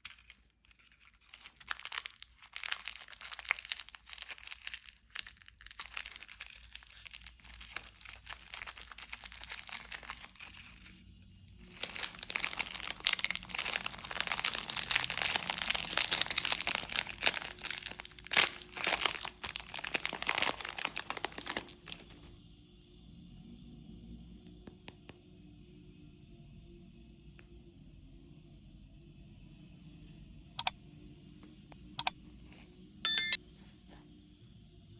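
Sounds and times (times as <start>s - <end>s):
plastic wrappers crinkling: 0.0s - 11.0s, 11.6s - 22.3s.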